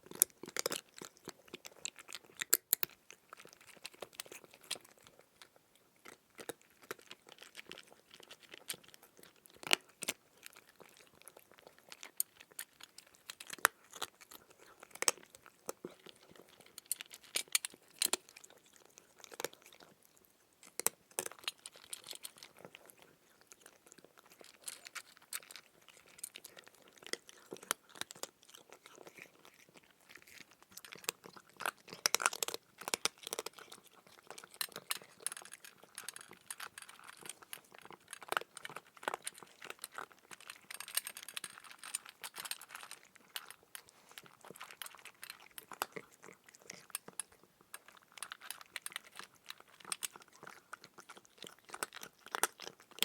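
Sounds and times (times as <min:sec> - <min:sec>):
cat chewing food: 0:00.0 - 0:53.0.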